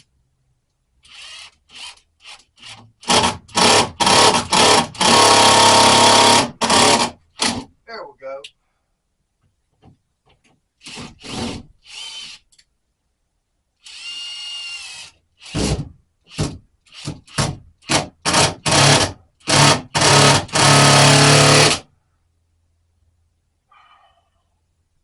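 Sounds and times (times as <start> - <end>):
power drill bursts: 13.8 - 15.8, 17.9 - 21.8.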